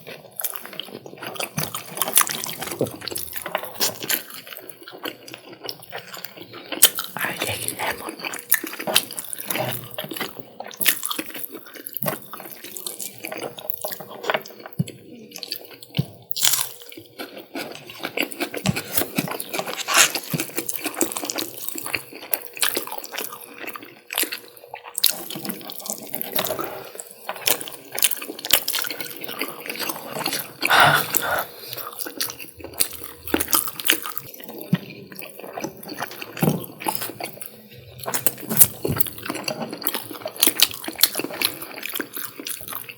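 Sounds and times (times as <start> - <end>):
chewing and mouth smacking: 0.1 - 42.9.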